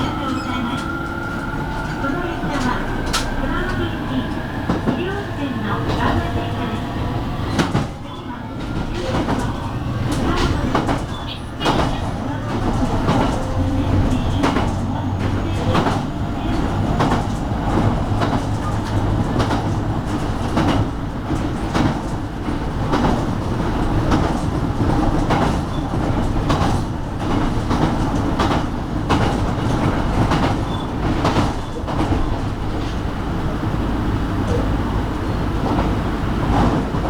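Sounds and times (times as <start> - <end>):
wheels clicking over rail joints: 0.0 - 33.1
electric train rumbling: 0.0 - 37.0.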